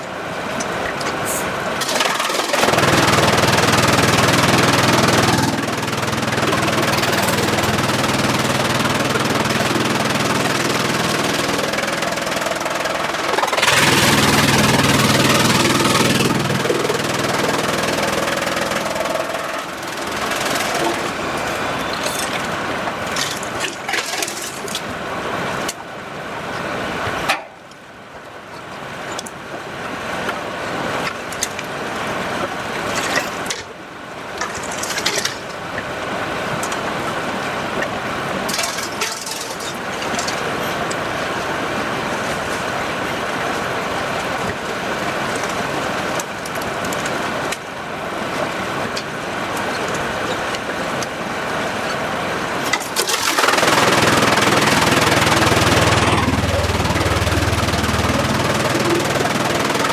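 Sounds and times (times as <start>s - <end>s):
heavy machinery running: 1.0s - 24.5s, 38.5s - 41.4s, 52.6s - 59.9s.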